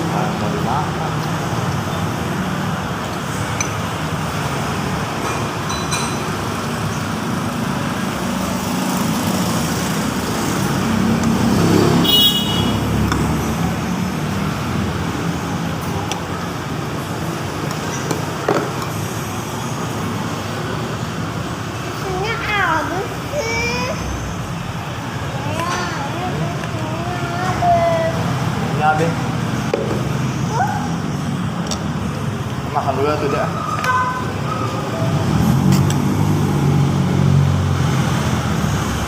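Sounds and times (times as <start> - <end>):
road traffic noise: 0.0 - 39.0
vehicle passing: 6.3 - 39.0.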